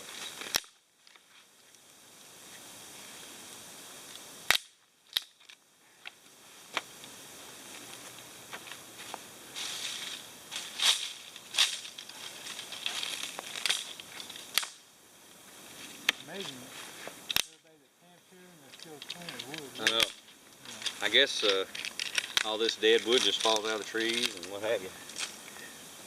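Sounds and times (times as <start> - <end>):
twigs and leaves crunching: 0.0 - 1.9, 4.5 - 25.8
dry sticks snapping: 0.3 - 1.2, 4.5 - 6.2, 10.8 - 14.8, 17.3 - 17.6, 18.7 - 25.4.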